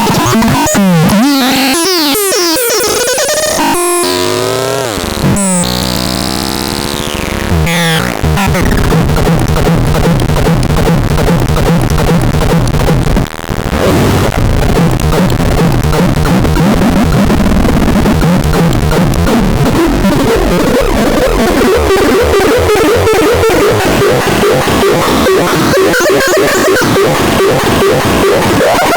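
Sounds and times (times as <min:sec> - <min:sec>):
harsh noisy synth drone: 0:00.0 - 0:28.9
synthesizer gliding tones: 0:01.1 - 0:28.9
pulsing low synth note: 0:01.7 - 0:13.1.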